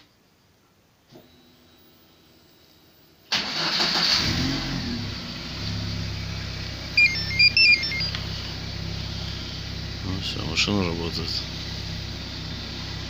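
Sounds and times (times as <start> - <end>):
car engine starting and idling: 3.3 - 13.0
electronic beeping tune: 7.0 - 8.3.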